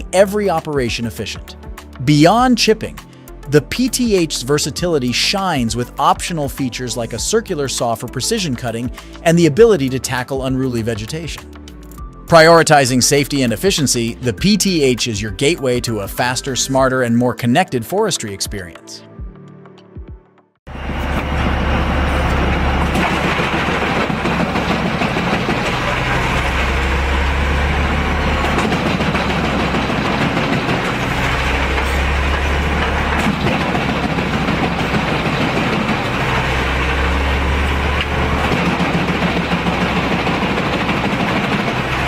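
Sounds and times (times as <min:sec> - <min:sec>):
heavy diesel machinery running: 0:20.7 - 0:42.0.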